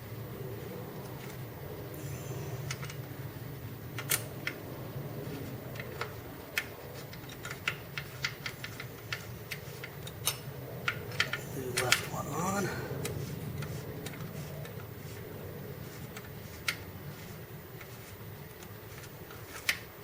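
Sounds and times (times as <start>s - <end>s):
steady low hum: 0.0s - 20.0s
clicks and taps of pedal and wrench: 5.8s - 12.1s.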